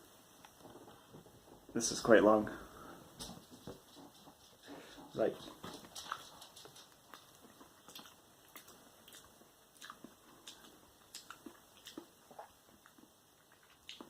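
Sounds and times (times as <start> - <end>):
wet chewing mouth clicks: 4.0 - 14.0.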